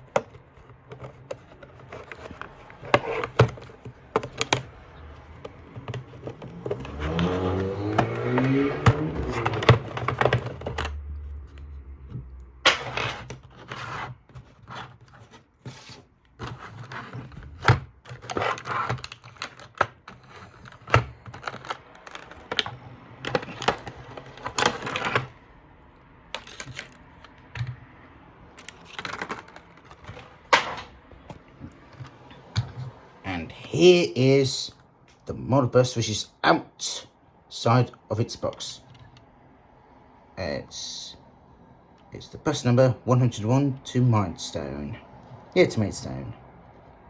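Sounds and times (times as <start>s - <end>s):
plastic and cardboard packaging handled: 0.0s - 25.5s, 26.2s - 27.8s, 28.6s - 33.2s.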